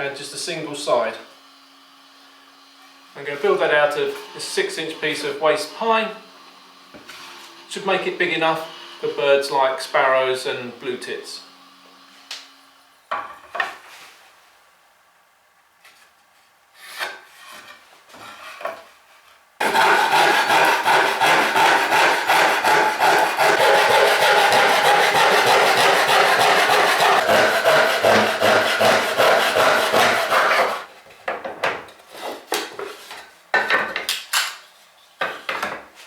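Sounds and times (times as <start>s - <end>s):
saw cutting wood: 2.6s - 12.0s, 19.6s - 30.9s.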